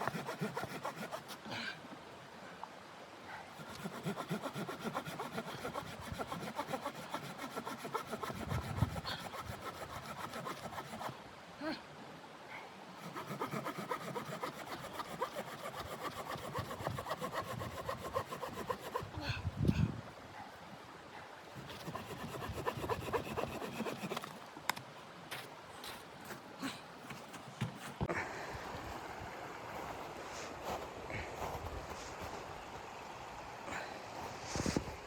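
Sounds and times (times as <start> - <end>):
hand saw cutting wood: 0.0 - 1.4, 3.6 - 11.2, 13.0 - 19.2, 21.6 - 24.4.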